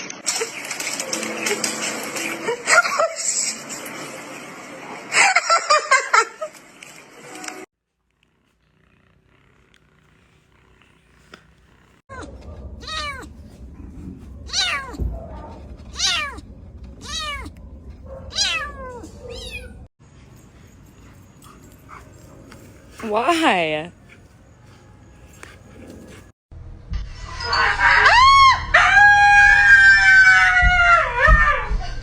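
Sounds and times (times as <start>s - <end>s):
low steady rumble: 11.6s - 19.9s
cat meowing: 12.1s - 13.3s, 14.5s - 15.1s, 15.9s - 16.4s, 17.0s - 17.6s, 18.3s - 19.9s.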